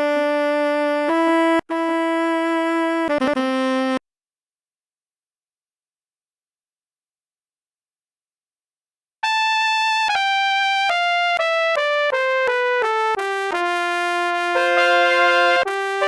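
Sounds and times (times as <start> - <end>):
sampled trumpet melody: 9.2 - 16.0.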